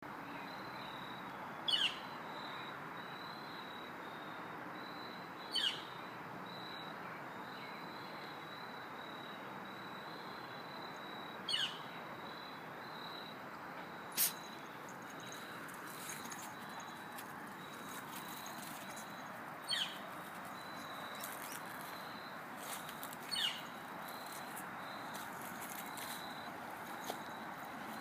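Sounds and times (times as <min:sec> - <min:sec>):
outdoor hiss: 0:14.1 - 0:16.1.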